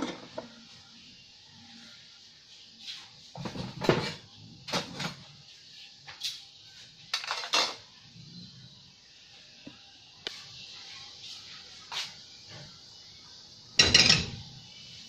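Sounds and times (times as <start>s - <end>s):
pots and utensils clattering: 0.0s - 0.6s, 3.3s - 5.4s, 7.1s - 7.9s, 13.8s - 14.6s.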